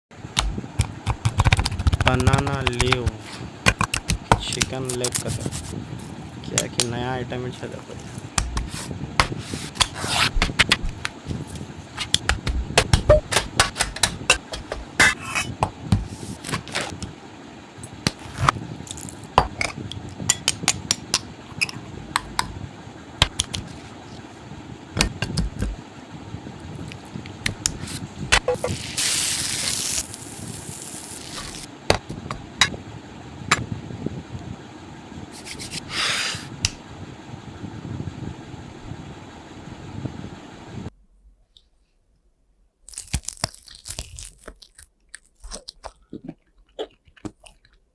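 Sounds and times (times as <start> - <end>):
short hiss bursts: 28.5 - 31.7.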